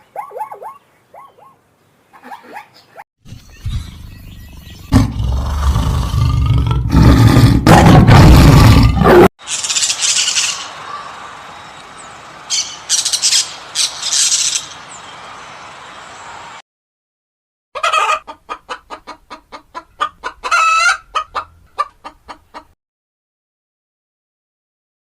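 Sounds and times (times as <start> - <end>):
high-pitched bird chirping: 2.2 - 5.0, 12.5 - 15.0.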